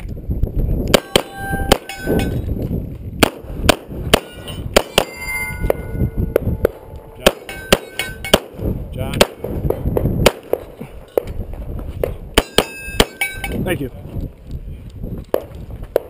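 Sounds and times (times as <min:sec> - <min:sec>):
pistol shots rapid fire: 0:01.0 - 0:01.9, 0:03.2 - 0:05.1, 0:07.2 - 0:08.6
steel targets ringing: 0:01.0 - 0:02.5, 0:04.2 - 0:08.4, 0:12.4 - 0:13.6.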